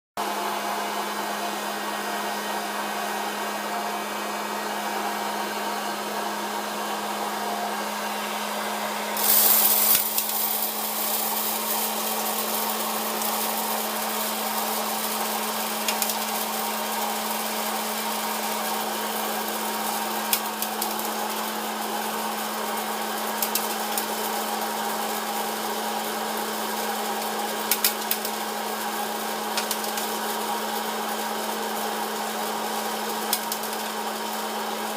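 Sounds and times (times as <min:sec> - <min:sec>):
popcorn popper fan whirring: 0:00.2 - 0:34.9
loud hissing burst: 0:09.2 - 0:13.3
popcorn kernels popping: 0:09.2 - 0:21.5, 0:23.3 - 0:24.2, 0:27.1 - 0:28.6, 0:29.4 - 0:32.3, 0:32.9 - 0:34.3.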